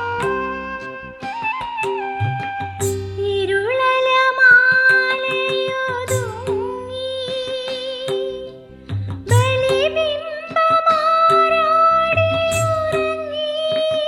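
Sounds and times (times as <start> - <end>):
light percussion: 0.0 - 14.0
soft low drum beats: 5.3 - 10.2.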